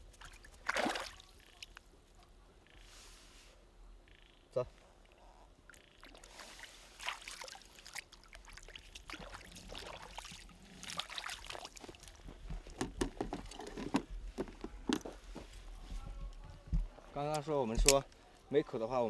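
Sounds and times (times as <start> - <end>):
water splashing and trickling: 0.0 - 1.9, 5.0 - 14.0.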